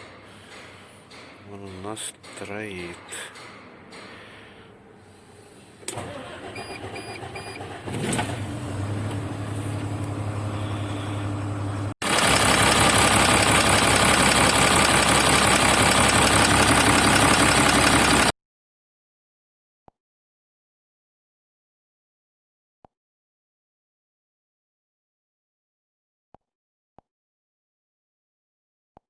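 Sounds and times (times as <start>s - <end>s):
diesel engine misfiring: 5.8s - 18.3s.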